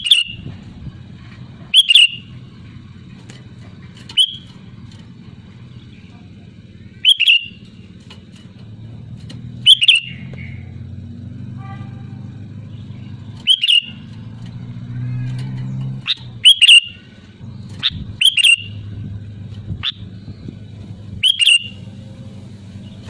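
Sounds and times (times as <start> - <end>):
bird sharp call notes: 0.0 - 0.4, 1.7 - 2.3, 4.1 - 4.6, 7.0 - 7.7, 9.6 - 10.7, 13.3 - 14.1, 16.0 - 17.1, 17.8 - 18.8, 21.2 - 21.9.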